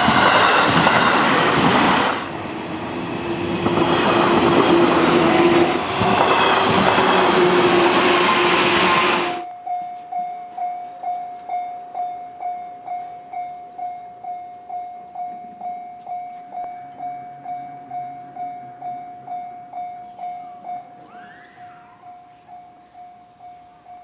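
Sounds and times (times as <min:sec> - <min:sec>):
passing train rumble: 0:00.0 - 0:24.0
level crossing warning bell: 0:09.4 - 0:24.0.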